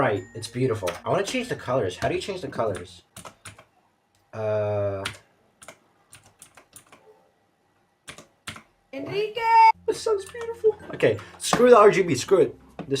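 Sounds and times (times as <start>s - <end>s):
mechanical keyboard clicks: 5.0s - 7.0s.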